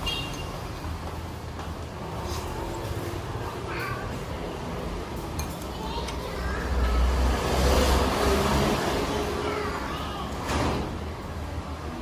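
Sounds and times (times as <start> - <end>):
vehicle engine rumble passing: 6.2 - 12.0.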